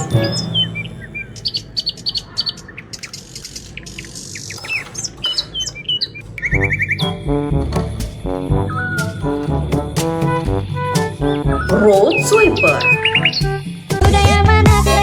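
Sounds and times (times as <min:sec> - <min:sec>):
music: 0:00.0 - 0:01.3, 0:06.4 - 0:15.0
fast bird trill: 0:00.0 - 0:07.2, 0:11.0 - 0:13.6
birds chirping: 0:00.0 - 0:14.0.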